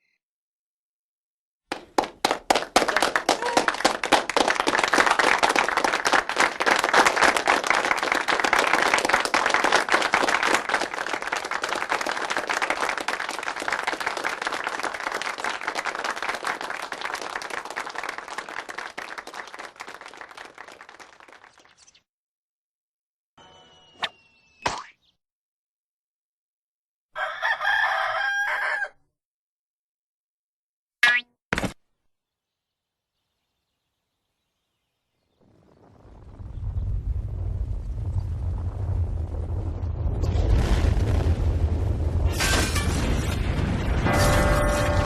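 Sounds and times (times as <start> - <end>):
crowd applause: 1.7 - 21.6.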